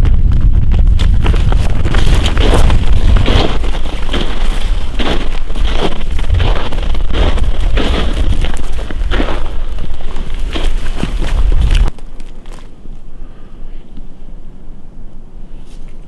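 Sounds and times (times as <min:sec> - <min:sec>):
wind buffeting microphone: 0:00.0 - 0:12.0
crunching strokes: 0:00.0 - 0:13.2.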